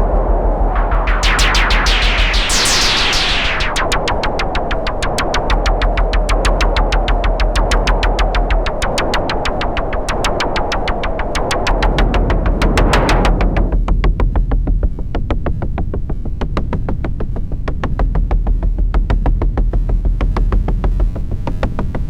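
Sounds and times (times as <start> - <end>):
deep steady hum: 0.0 - 13.8.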